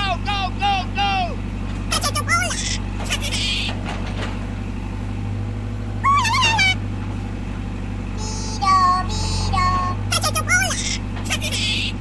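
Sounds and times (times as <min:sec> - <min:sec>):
high wavering squeals: 0:06.0 - 0:06.8, 0:08.2 - 0:10.0
small motor humming: 0:06.0 - 0:06.8, 0:08.1 - 0:12.0.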